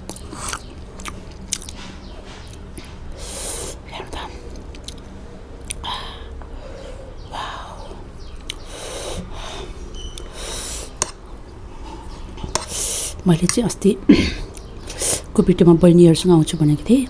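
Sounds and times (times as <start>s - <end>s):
sharp chewing or utensil clicks: 0.0s - 3.0s, 4.1s - 5.0s, 5.6s - 5.8s, 8.4s - 8.6s, 11.0s - 11.2s
person sniffing and breathing hard: 2.4s - 3.9s, 8.6s - 11.0s, 12.6s - 13.2s, 14.9s - 15.3s.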